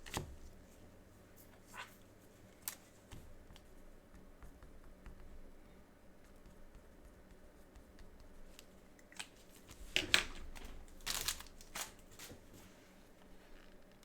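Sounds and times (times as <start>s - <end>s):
plastic wrapping crinkling and tearing: 10.2s - 12.4s.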